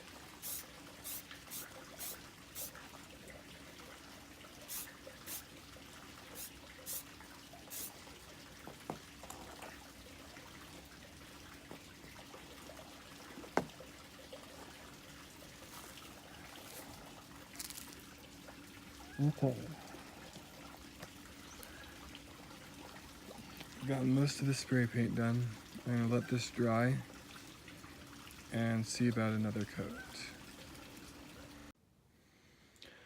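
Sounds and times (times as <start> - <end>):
spray can hissing: 0.4 - 2.7, 4.7 - 5.4, 6.4 - 7.0, 7.7 - 7.9.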